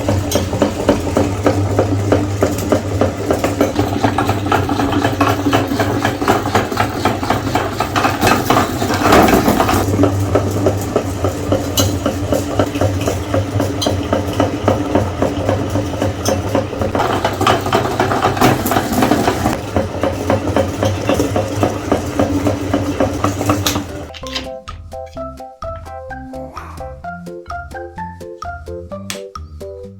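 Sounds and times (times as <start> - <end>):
electric meat grinder running: 0.0 - 24.1
organ-like music: 24.0 - 29.9.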